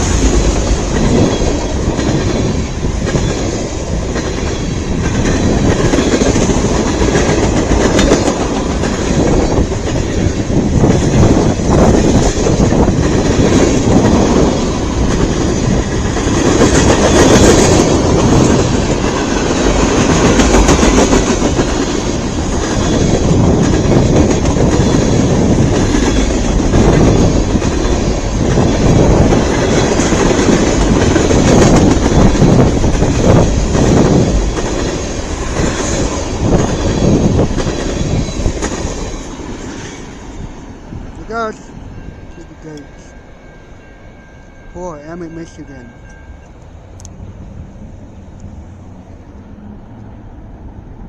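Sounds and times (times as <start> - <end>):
wheels clacking over rail joints: 0.0 - 40.3
freight train rumbling past: 0.0 - 51.0.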